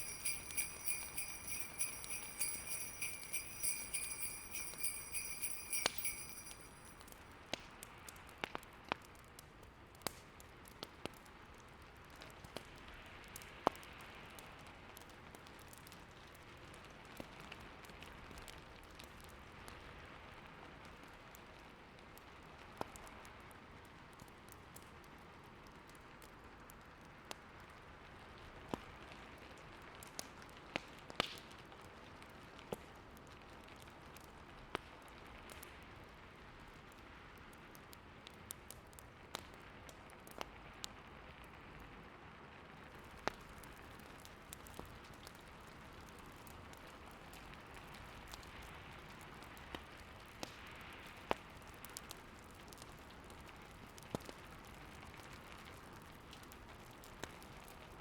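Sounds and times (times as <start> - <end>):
hissing snowstorm wind: 0.0 - 6.9
wood fire crackling and popping: 42.9 - 58.0.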